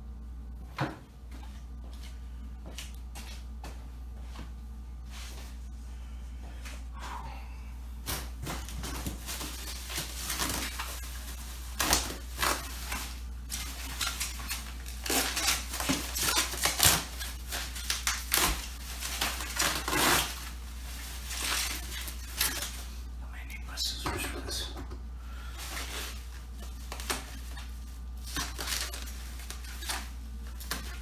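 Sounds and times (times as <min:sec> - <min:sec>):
steady low hum: 0:00.0 - 0:31.0
bubble wrap crinkling and tearing: 0:08.0 - 0:23.1, 0:25.5 - 0:31.0.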